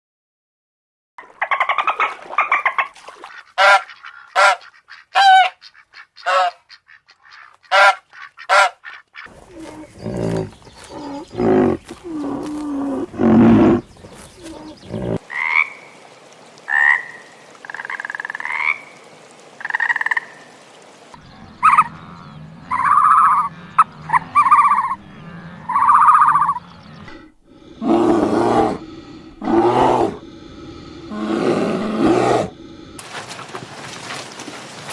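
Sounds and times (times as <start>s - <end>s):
animal calls: 7.3s - 15.7s, 21.4s - 32.9s.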